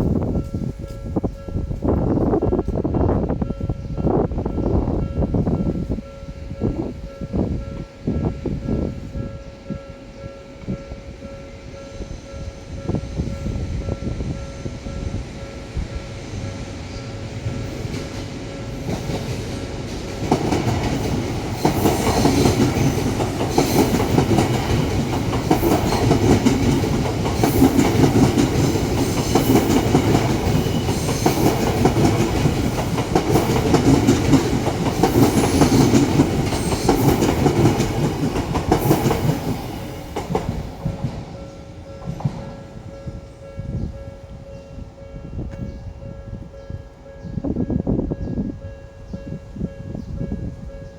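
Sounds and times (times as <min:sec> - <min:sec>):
train passing slowly: 0:00.0 - 0:50.9
wheels clacking over rail joints: 0:17.8 - 0:42.6.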